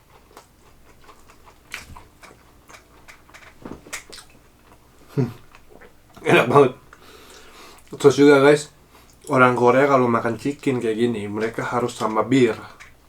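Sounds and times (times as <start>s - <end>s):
crunchy chewing: 0.0s - 6.2s.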